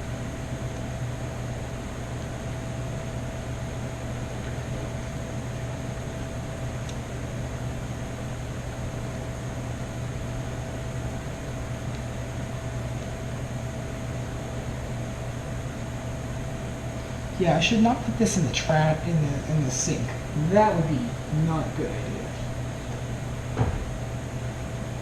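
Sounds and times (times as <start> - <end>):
faint high whine: 0.0 - 25.0
machine hum and hiss: 0.0 - 25.0.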